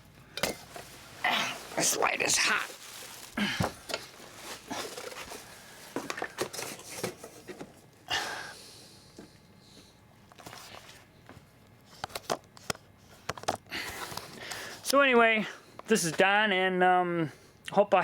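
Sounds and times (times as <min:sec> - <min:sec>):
objects being handled: 0:00.3 - 0:07.8.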